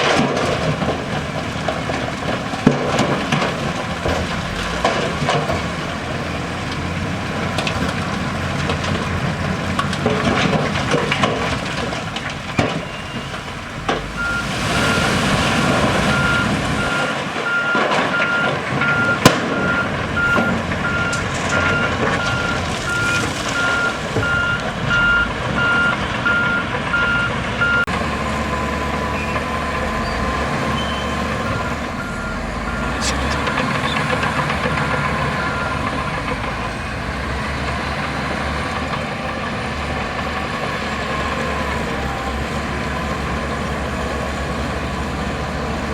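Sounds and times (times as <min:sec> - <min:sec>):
diesel engine: 0:00.0 - 0:45.9
reversing alarm beeping: 0:14.2 - 0:15.2, 0:16.0 - 0:27.9, 0:28.5 - 0:36.1.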